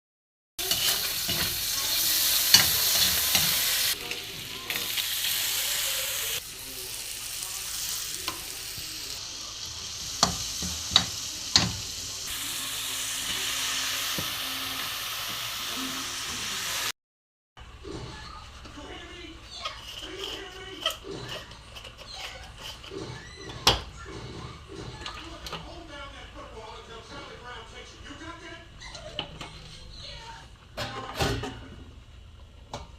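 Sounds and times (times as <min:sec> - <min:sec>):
spatula scraping a pan: 0:00.6 - 0:04.0, 0:18.0 - 0:23.6
food sizzling in a pan: 0:00.6 - 0:16.9.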